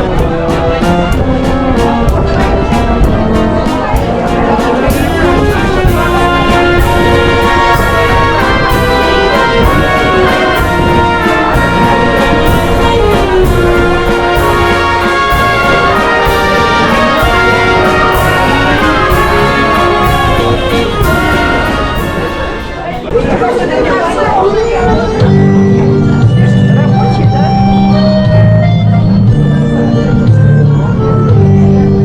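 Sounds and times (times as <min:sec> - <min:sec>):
brass-led orchestral music: 0:00.0 - 0:23.7.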